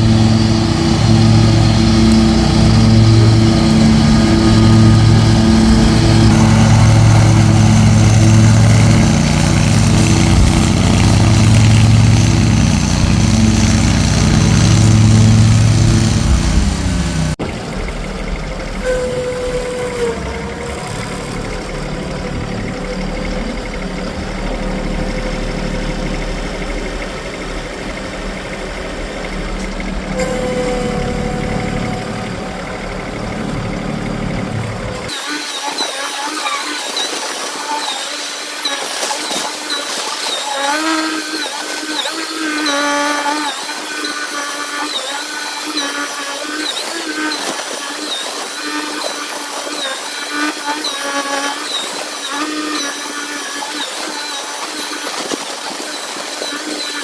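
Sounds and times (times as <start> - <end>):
engine deep rumble: 0.0 - 35.2
wavering whine: 0.0 - 57.0.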